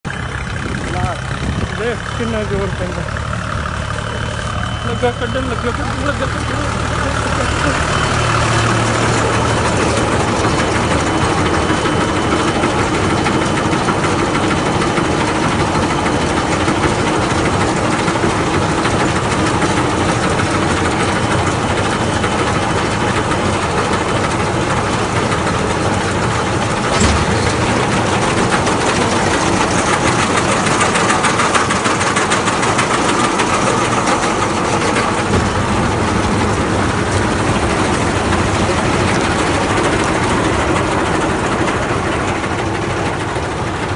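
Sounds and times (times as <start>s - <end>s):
tractor engine and baler running: 0.0s - 43.9s.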